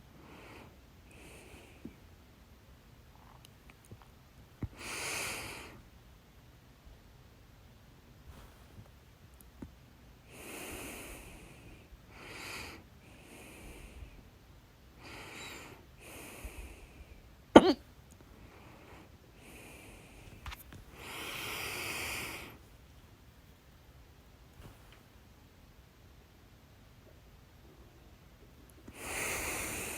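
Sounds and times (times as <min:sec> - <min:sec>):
person breathing in and out: 0:08.3 - 0:08.9, 0:10.2 - 0:14.2, 0:15.0 - 0:17.2, 0:18.4 - 0:22.7, 0:28.9 - 0:29.9
loud hiccup: 0:17.6 - 0:17.8.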